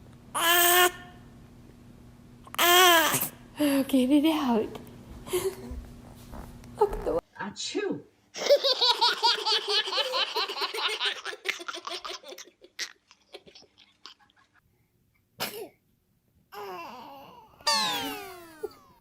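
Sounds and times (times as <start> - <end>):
person sneezing: 15.4 - 15.8.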